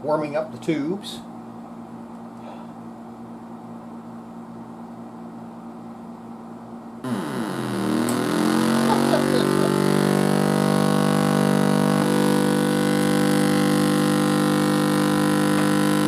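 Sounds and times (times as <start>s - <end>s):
amplifier buzzing drone: 7.0s - 16.0s.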